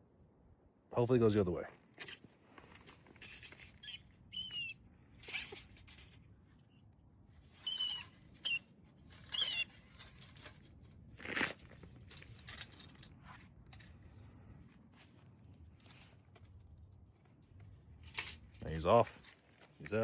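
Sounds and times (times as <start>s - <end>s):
animal squeaking: 3.2s - 5.7s, 7.6s - 8.7s, 9.3s - 9.8s.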